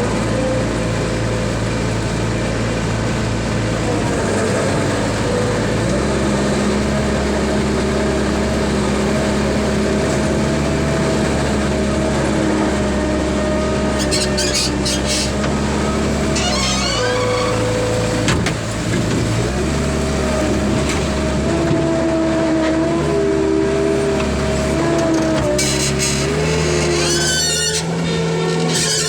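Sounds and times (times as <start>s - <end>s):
loader engine running: 0.0s - 29.0s.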